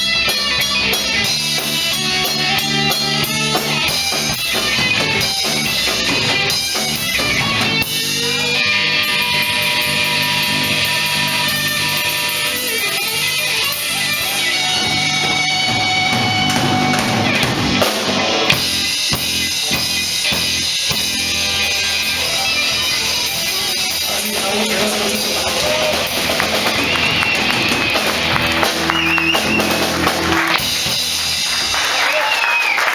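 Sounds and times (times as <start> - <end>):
long held guitar notes: 0.0 - 31.8
rock band playing: 0.0 - 32.9.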